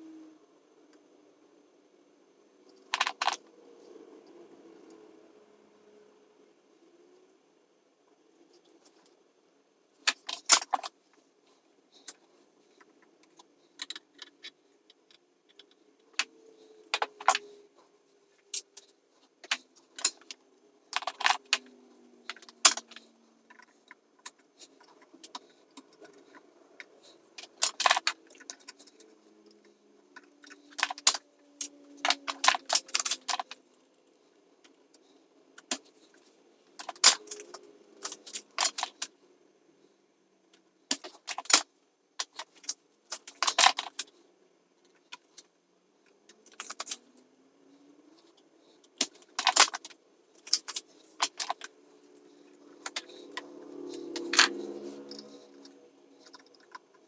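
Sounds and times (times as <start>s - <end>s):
hand tools clicking and clinking: 17.0s - 17.5s, 19.4s - 20.4s, 21.0s - 21.7s, 24.3s - 29.1s, 30.2s - 31.2s, 32.0s - 33.6s, 36.8s - 39.1s, 42.2s - 44.1s, 46.4s - 47.0s, 48.9s - 51.7s, 52.8s - 57.0s.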